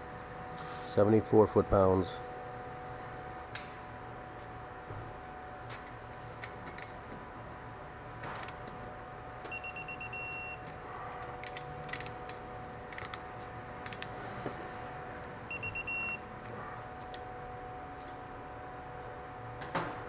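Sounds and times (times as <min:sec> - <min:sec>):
torque wrench beeping: 0:09.5 - 0:10.7, 0:15.5 - 0:16.2.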